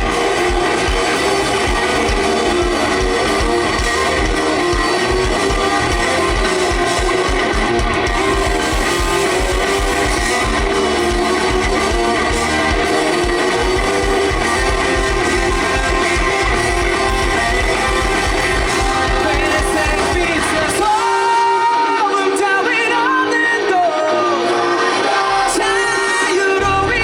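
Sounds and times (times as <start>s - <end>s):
pounding drum beat: 0.0s - 21.0s
bass: 0.0s - 27.0s
electric guitars: 0.0s - 27.0s
person singing: 0.0s - 27.0s.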